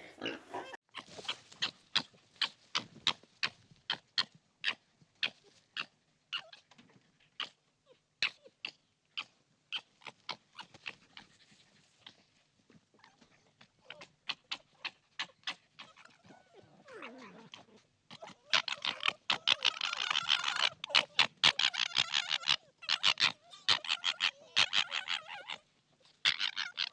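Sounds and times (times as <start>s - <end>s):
animal clicks and pulsed calls: 0.9s - 6.8s, 7.4s - 7.6s, 8.2s - 12.3s, 13.0s - 26.9s.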